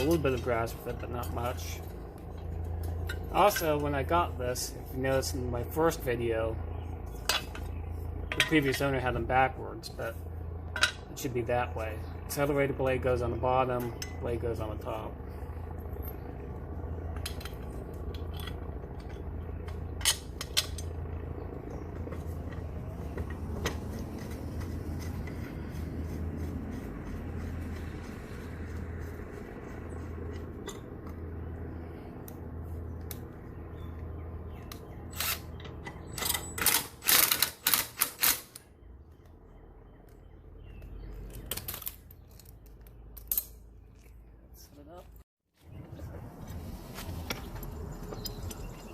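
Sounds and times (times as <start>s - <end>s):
pulsing low hum: 0.0s - 41.5s
metal tools clinking and clanking: 2.7s - 4.0s, 8.3s - 9.0s.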